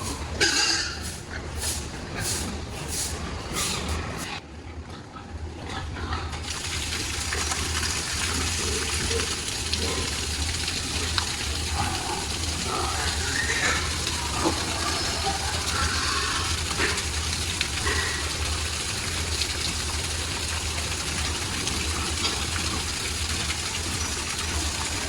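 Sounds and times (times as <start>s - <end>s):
hose spraying water: 0.0s - 4.4s, 6.4s - 25.0s
water splashing: 6.5s - 25.0s.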